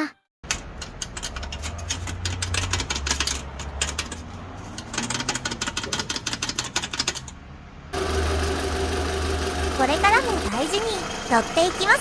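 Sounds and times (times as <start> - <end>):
car engine humming: 0.6 - 12.0.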